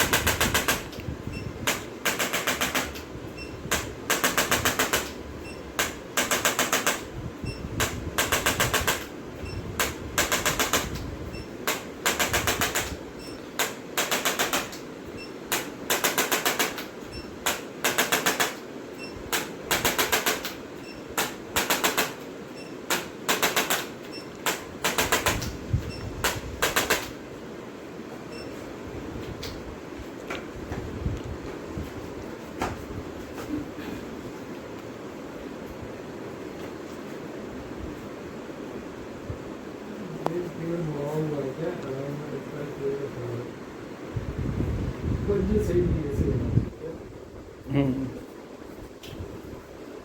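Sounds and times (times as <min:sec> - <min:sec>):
rapid mechanical tapping: 0:00.0 - 0:01.0, 0:01.6 - 0:18.7, 0:19.3 - 0:22.3, 0:22.9 - 0:27.2
steady background noise: 0:00.0 - 0:50.0.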